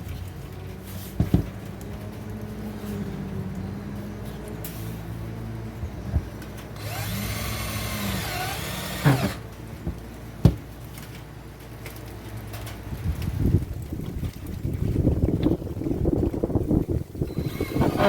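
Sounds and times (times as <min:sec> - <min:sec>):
power drill driving a screw: 0:06.8 - 0:09.4, 0:17.3 - 0:18.0.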